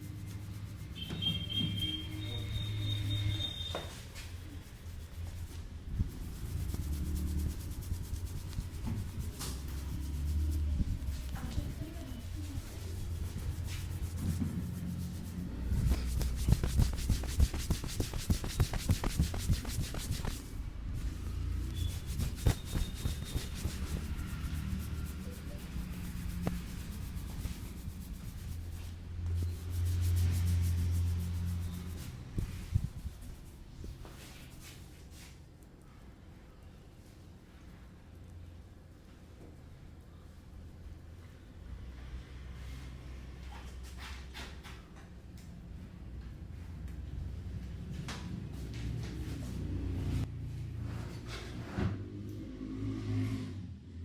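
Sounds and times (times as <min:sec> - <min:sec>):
hands rubbing scalp and hair: 0:00.0 - 0:35.3.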